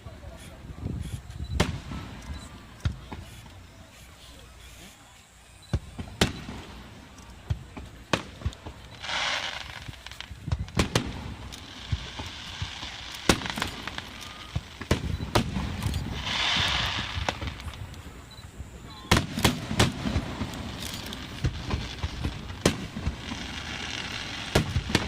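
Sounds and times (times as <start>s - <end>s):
fireworks bangs: 0.0s - 25.0s
fireworks hissing: 0.0s - 25.0s.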